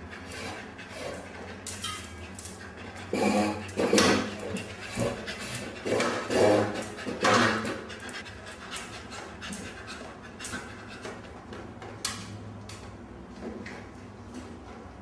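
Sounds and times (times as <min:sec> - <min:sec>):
dog panting: 0:00.0 - 0:11.5.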